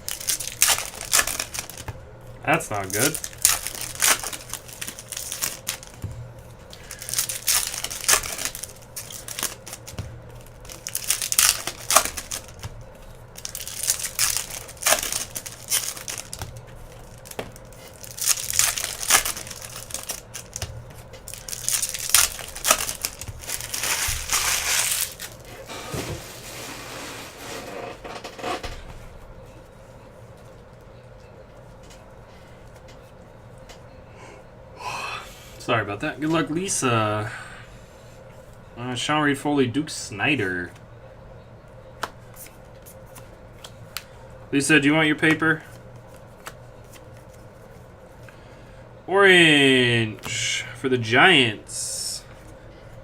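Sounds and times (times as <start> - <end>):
card pack wrappers crinkling: 0.0 - 6.0, 6.6 - 25.7.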